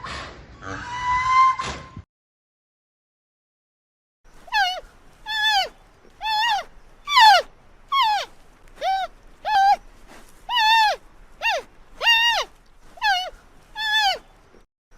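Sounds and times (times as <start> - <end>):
animal calling: 4.3 - 14.6.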